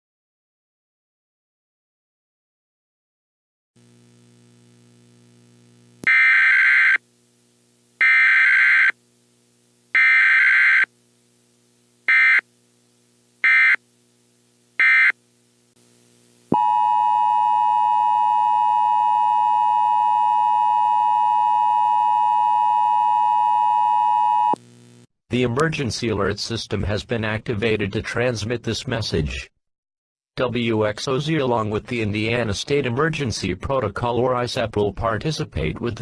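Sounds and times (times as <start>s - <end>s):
screeching digital data bursts: 10.0s - 10.9s.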